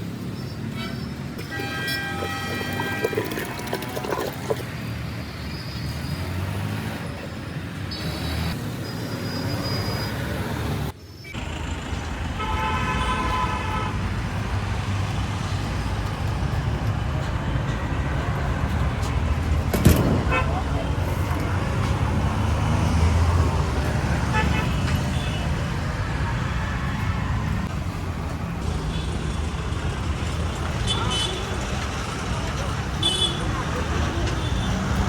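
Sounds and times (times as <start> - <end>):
road traffic: 0.0 - 35.0
vehicle horns honking: 0.8 - 3.2, 12.4 - 14.0, 20.2 - 20.6, 30.8 - 31.5, 33.0 - 33.5.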